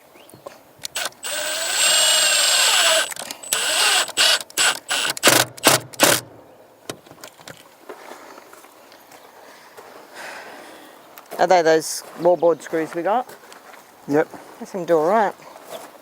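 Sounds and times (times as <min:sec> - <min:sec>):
cordless drill driving screws: 0:00.8 - 0:06.2.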